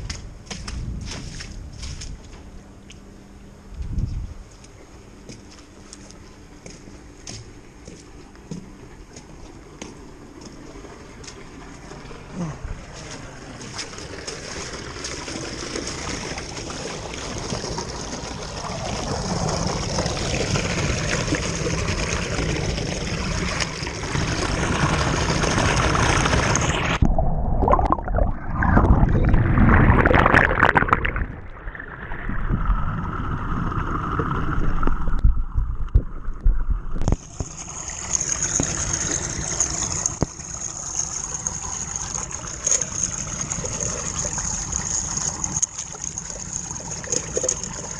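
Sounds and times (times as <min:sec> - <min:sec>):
water draining down a drain: 0:10.8 - 0:47.9.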